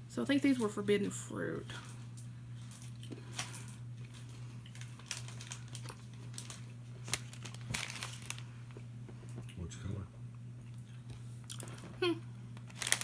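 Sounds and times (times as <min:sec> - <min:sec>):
steady low hum: 0:00.0 - 0:13.0
candy wrapper crinkling: 0:02.7 - 0:08.5, 0:12.6 - 0:13.0.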